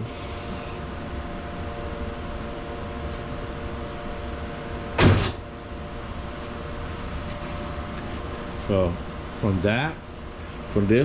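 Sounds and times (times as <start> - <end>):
steady background hum: 0.0 - 11.0
loud short thump: 5.0 - 5.4.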